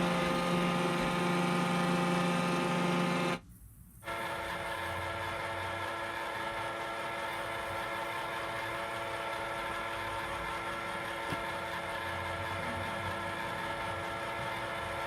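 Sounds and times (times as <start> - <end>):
small electric motor whirring: 0.0 - 3.4.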